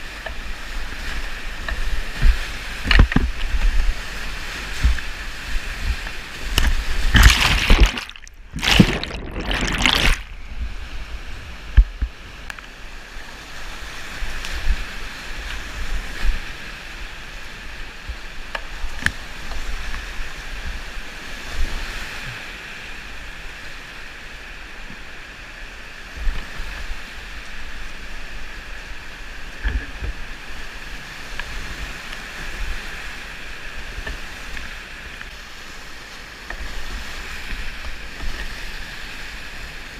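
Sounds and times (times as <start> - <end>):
kayak splashing: 0.0 - 10.9
river rushing: 0.6 - 15.9.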